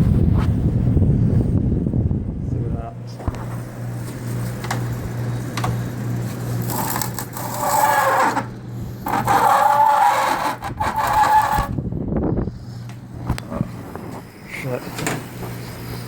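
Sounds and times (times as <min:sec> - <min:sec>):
air conditioner humming: 0:00.0 - 0:16.0
scraping rubbing noise: 0:06.6 - 0:11.8.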